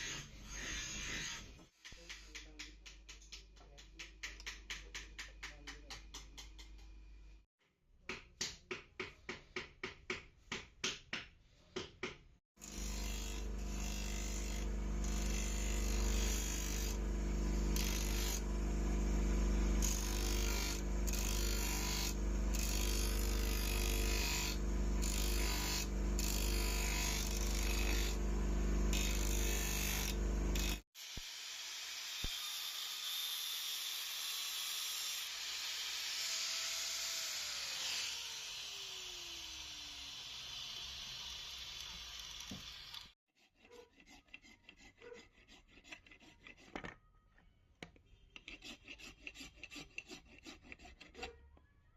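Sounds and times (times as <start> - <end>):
electric power tool running: 12.6 - 43.2.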